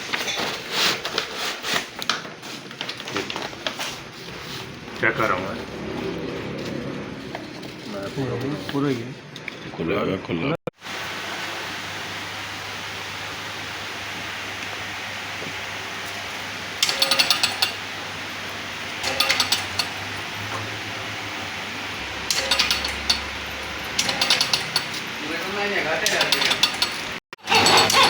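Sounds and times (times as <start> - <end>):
metal tools clicking: 16.8 - 17.8, 22.2 - 28.0.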